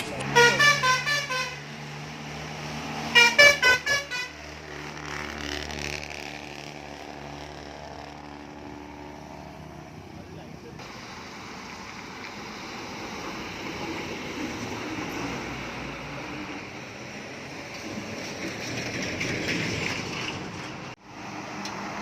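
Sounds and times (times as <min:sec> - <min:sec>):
diesel engine hum: 0:00.0 - 0:22.0
musical vehicle horn: 0:00.3 - 0:01.8, 0:03.1 - 0:04.4.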